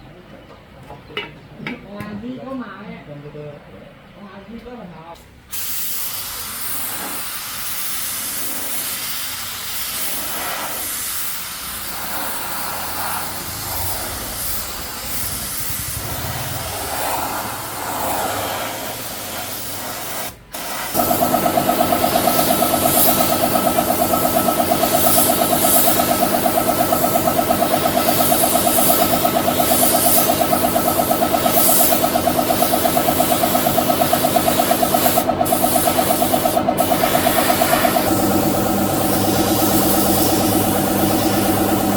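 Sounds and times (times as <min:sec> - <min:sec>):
spraying hiss: 0:05.5 - 0:41.9
motor running with fast pulse: 0:11.9 - 0:19.2, 0:20.9 - 0:41.9.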